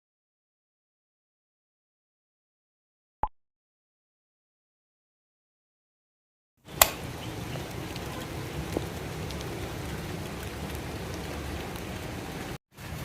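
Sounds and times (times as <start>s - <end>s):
low rumbling background noise: 6.7s - 13.0s
sharp click: 6.8s - 7.0s.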